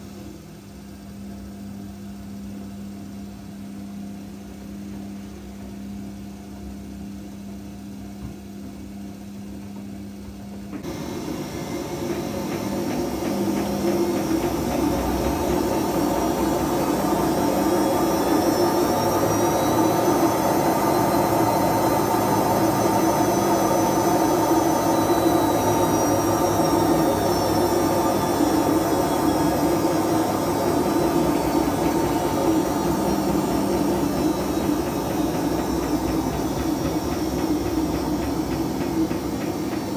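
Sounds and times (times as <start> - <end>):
washing machine low hum: 0.0 - 39.9
washing machine drum rumbling: 10.5 - 39.9
motor whine: 10.8 - 39.9.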